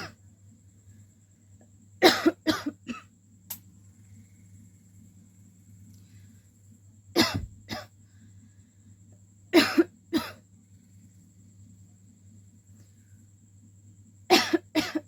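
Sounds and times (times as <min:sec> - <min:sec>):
faint steady hum: 0:00.0 - 0:15.0
woman coughing: 0:02.0 - 0:03.0, 0:07.2 - 0:07.9, 0:09.6 - 0:10.4, 0:14.3 - 0:15.0.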